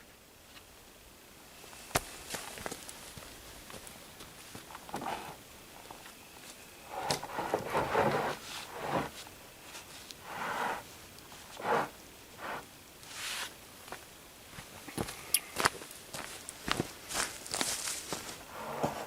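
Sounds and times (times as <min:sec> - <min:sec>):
footsteps or scuffs: 0:14.5 - 0:18.4.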